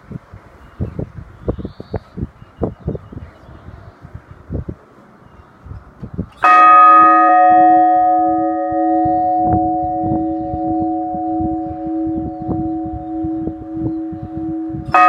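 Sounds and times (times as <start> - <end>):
large church bell ringing: 6.4 - 15.0.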